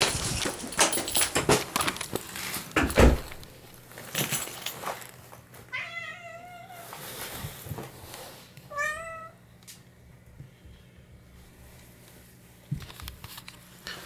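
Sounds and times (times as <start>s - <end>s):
cat meowing: 5.7s - 6.9s, 8.7s - 9.4s.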